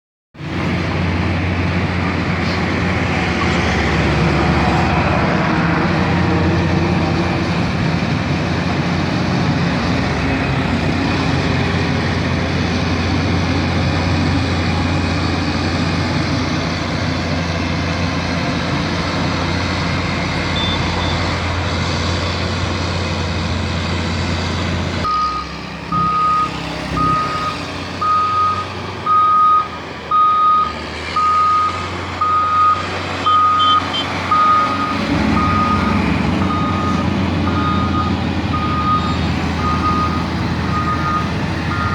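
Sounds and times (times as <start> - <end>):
reversing alarm beeping: 20.5 - 21.4, 25.0 - 41.9.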